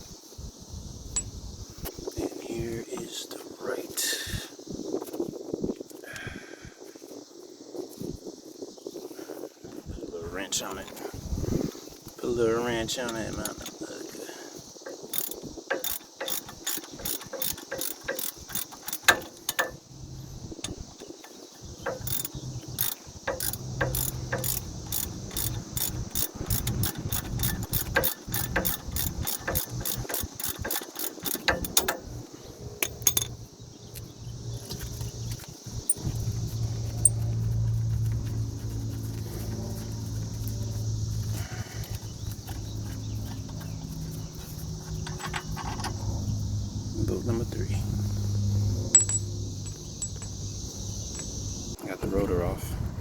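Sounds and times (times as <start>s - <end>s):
ratchet wrench clicking: 13.0s - 13.8s, 14.8s - 32.2s, 32.8s - 33.4s, 44.9s - 45.9s, 48.9s - 50.4s.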